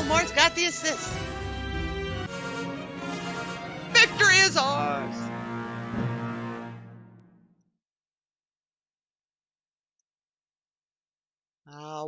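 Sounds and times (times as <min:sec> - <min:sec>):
game music held chord: 0:00.0 - 0:07.3.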